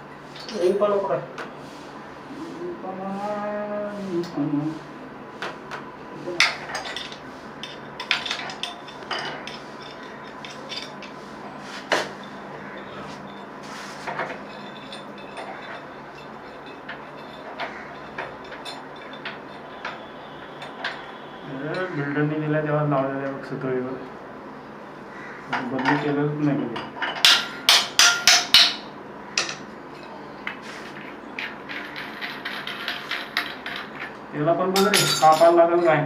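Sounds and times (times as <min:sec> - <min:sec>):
metallic clinks of plumbing tools: 0:14.1 - 0:21.1, 0:34.8 - 0:36.0.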